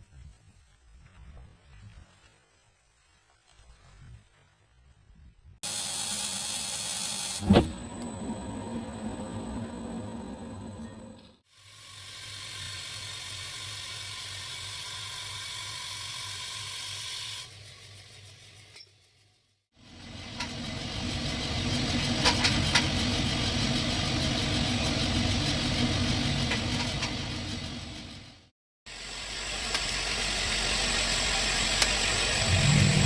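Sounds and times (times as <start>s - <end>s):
coffee roaster hissing: 5.6s - 18.6s, 19.8s - 28.1s, 28.9s - 33.0s
machinery humming: 5.8s - 11.4s, 19.8s - 28.4s, 29.0s - 33.0s.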